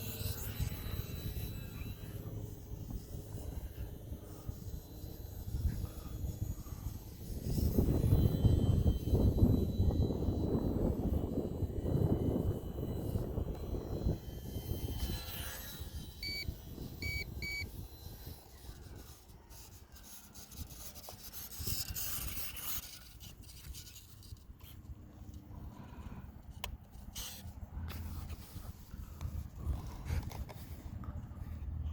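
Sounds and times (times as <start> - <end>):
wind buffeting microphone: 0.0 - 24.0
short high electronic beeps: 16.2 - 17.7.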